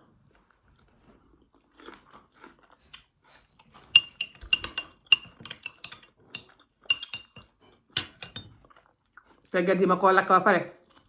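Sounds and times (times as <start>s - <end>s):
cutlery clinking against plate: 3.9s - 8.6s.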